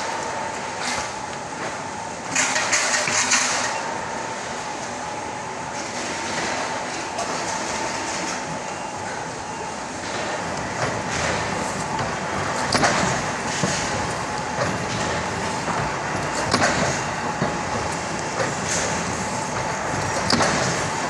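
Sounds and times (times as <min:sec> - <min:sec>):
machine hum: 0:10.0 - 0:21.0
press platen clacks: 0:10.4 - 0:21.0.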